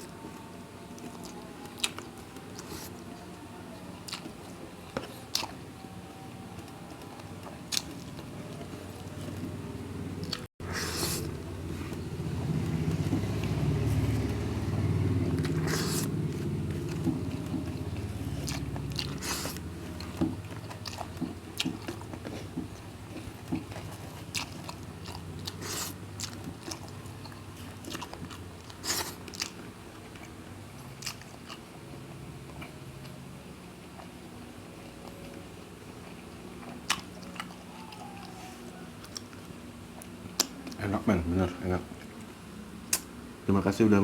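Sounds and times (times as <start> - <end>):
person chewing food: 0.0 - 3.1, 4.0 - 5.6, 6.5 - 9.6, 10.2 - 33.2, 33.8 - 40.8.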